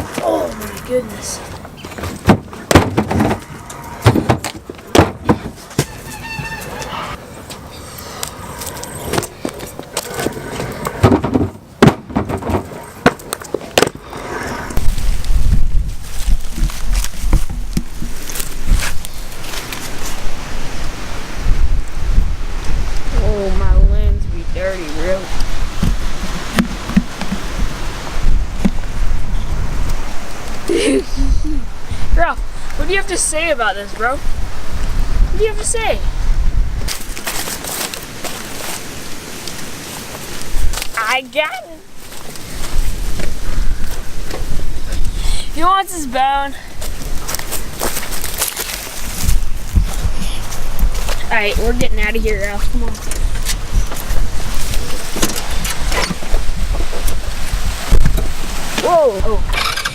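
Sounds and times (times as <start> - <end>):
hard wheels rolling on concrete: 0.0 - 20.2
wind buffeting microphone: 0.0 - 59.9.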